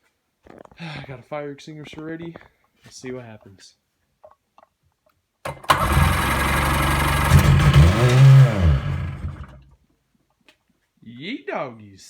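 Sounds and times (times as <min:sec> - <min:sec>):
two-stroke engine cranking and running: 0:05.5 - 0:09.6.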